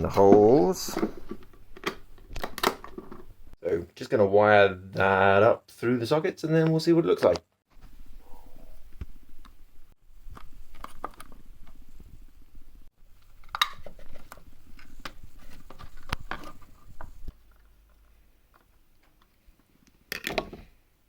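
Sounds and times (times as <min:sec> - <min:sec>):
wires rustling: 0:07.7 - 0:20.0.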